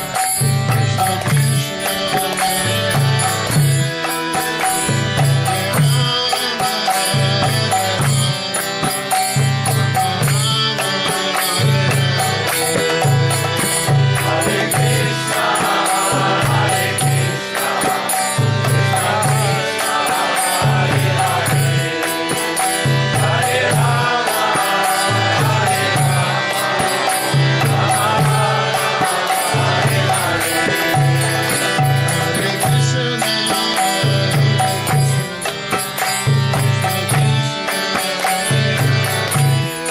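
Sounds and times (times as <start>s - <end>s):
held instrumental tones: 0.0s - 39.9s
repeating drum beat: 0.0s - 39.9s
mantra chanted in sung phrases: 10.7s - 35.1s.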